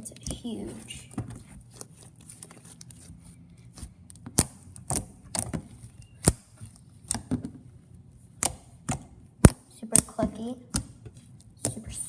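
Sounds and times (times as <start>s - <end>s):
slime being handled: 0.1s - 7.3s.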